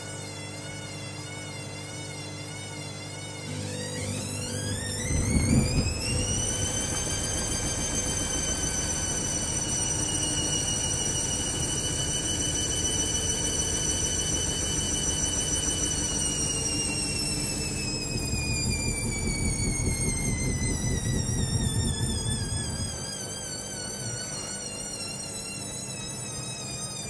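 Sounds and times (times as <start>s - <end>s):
washing machine motor whine: 0.0s - 27.0s
low drum vibration: 4.9s - 9.7s.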